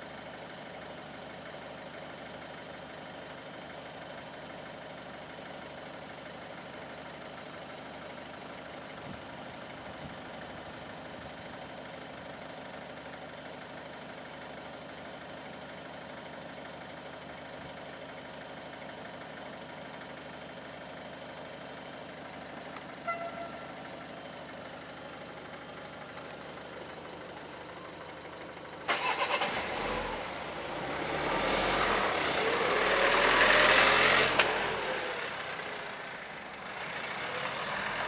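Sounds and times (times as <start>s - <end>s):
vehicle approaching: 22.5s - 38.0s.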